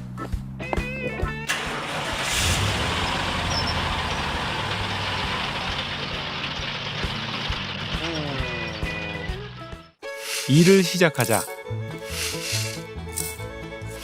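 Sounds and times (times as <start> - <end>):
heavy truck engine rumbling: 1.4 - 9.8
short burst of hiss: 10.1 - 10.5, 12.0 - 12.8.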